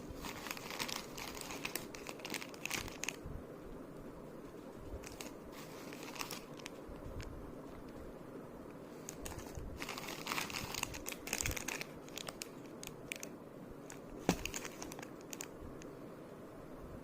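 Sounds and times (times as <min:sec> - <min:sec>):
packaging crinkling and rustling: 0:00.0 - 0:03.2, 0:05.0 - 0:06.8, 0:09.0 - 0:15.5.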